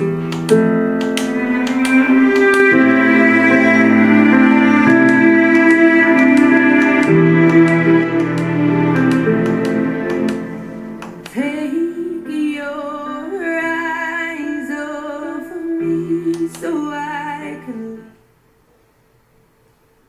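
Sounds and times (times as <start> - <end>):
instrumental backing: 0.0 - 11.6.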